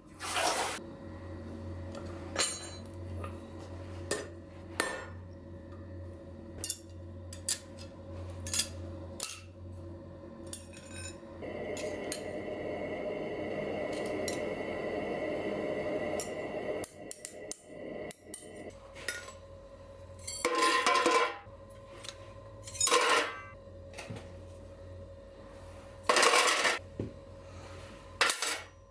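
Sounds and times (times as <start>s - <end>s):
whirring machine: 11.2s - 18.8s.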